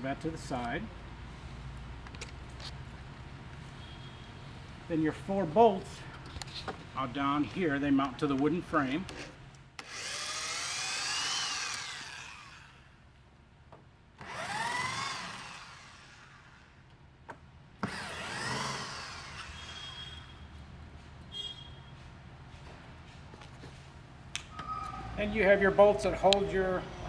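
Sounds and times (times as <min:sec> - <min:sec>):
power drill backing out bolts: 0:09.8 - 0:12.8, 0:14.2 - 0:16.7, 0:17.8 - 0:20.6.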